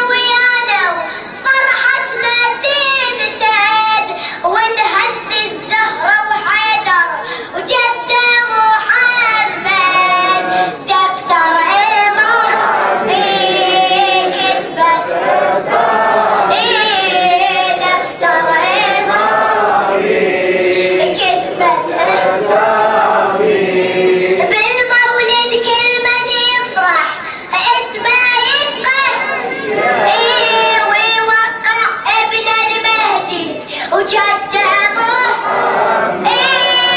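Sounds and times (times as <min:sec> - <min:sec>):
chorus singing devotional chant: 0:07.6 - 0:26.8, 0:27.8 - 0:36.9.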